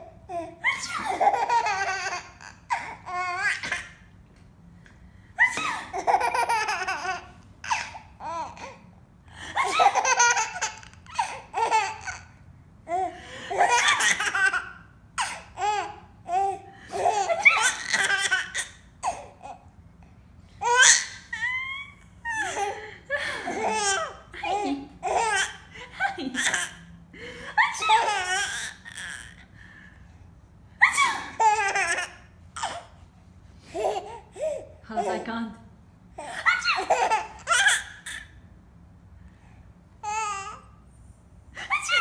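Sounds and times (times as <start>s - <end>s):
baby laughing: 0.3s - 4.0s, 5.4s - 8.8s, 9.6s - 19.6s, 20.6s - 26.8s, 27.6s - 29.4s, 30.8s - 32.8s, 36.2s - 38.4s, 41.6s - 42.0s.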